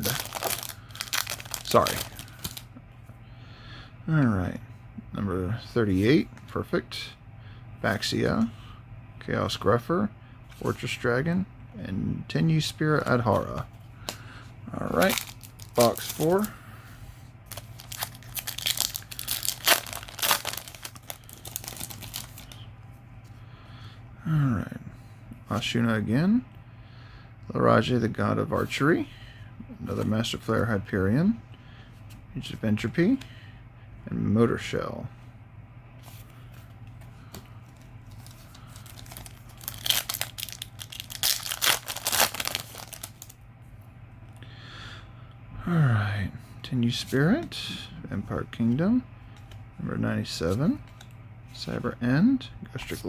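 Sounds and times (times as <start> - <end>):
foil wrapper crinkling and tearing: 0.0 - 2.6, 15.0 - 16.5, 17.5 - 22.5, 38.1 - 43.4.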